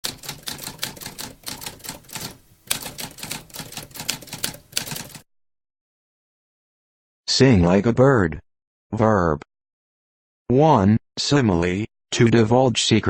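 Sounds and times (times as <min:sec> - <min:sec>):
typewriter keys clacking: 0:00.0 - 0:05.2.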